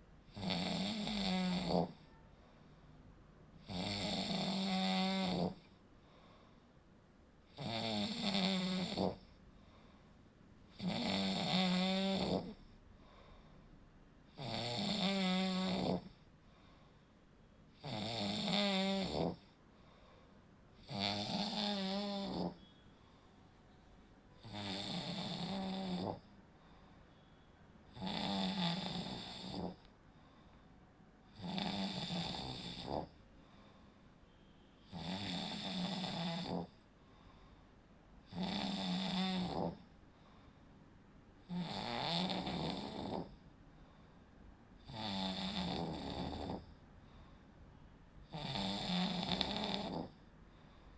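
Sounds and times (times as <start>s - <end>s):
person snoring: 0.3s - 2.0s, 3.6s - 5.7s, 7.6s - 9.3s, 10.7s - 12.7s, 14.4s - 16.2s, 17.8s - 19.4s, 20.8s - 22.6s, 24.4s - 26.3s, 27.9s - 29.9s, 31.3s - 33.2s, 34.9s - 36.8s, 38.3s - 39.8s, 41.5s - 43.4s, 44.8s - 46.7s, 48.3s - 50.2s.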